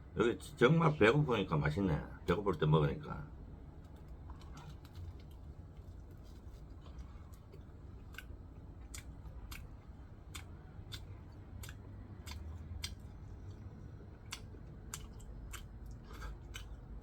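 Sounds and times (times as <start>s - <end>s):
low steady hum: 0.0s - 17.0s
person chewing food: 3.8s - 17.0s.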